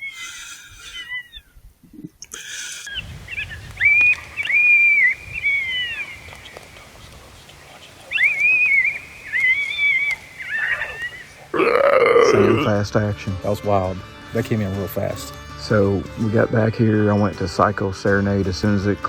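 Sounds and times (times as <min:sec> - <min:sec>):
coyote howling: 0:02.9 - 0:12.7.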